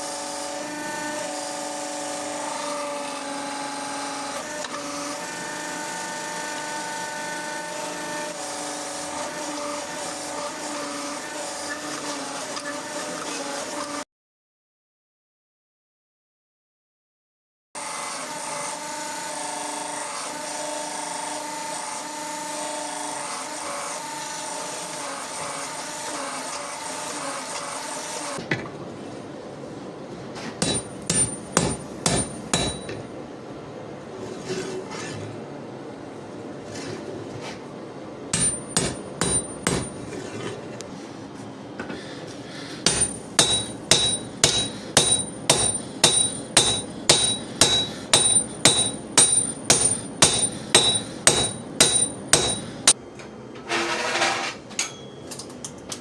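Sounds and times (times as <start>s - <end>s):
hammer on hot steel ringing: 30.6s - 33.0s, 38.4s - 40.0s, 42.8s - 53.0s.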